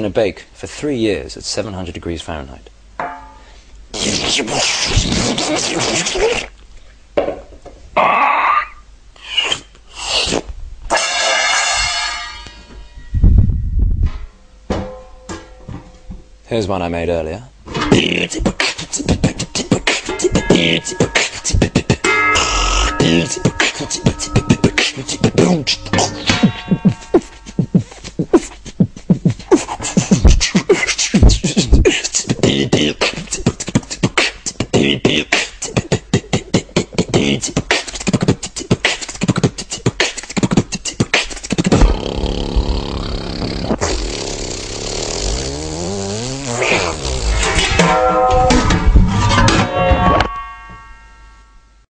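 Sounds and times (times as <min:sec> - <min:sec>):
beatboxed drum sounds: 0:03.9 - 0:06.6, 0:09.2 - 0:11.0, 0:17.8 - 0:47.9
voiced bass and synth lines: 0:17.8 - 0:29.3, 0:41.6 - 0:50.1.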